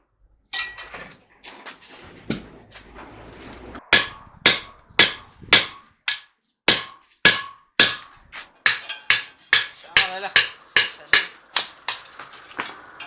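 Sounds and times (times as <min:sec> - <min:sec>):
low shop noise: 0:00.0 - 0:13.0
hammer blows on metal: 0:03.9 - 0:11.7.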